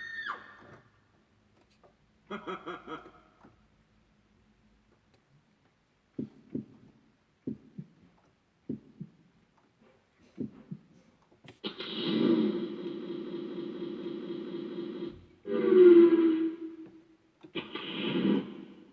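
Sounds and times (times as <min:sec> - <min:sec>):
heartbeat double thumps: 0:06.1 - 0:09.4, 0:10.3 - 0:11.0.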